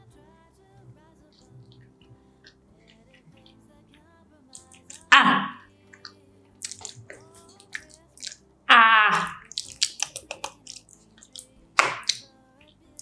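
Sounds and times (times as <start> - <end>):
wet chewing and mouth smacks: 4.6 - 12.3.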